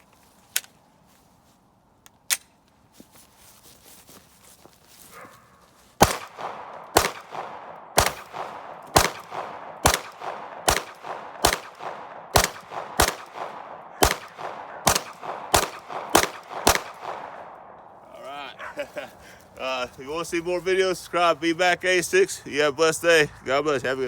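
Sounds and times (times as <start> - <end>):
pistol shots: 6.0 - 17.9.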